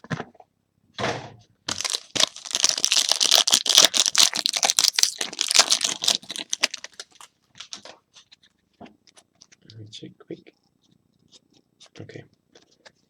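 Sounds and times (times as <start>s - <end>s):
wrapper tearing: 1.7s - 7.8s
wrapper crinkling: 1.7s - 7.9s.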